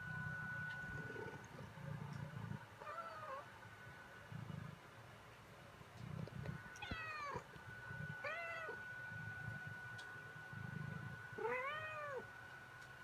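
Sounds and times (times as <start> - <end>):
cat meowing: 6.8 - 7.4, 11.4 - 12.3.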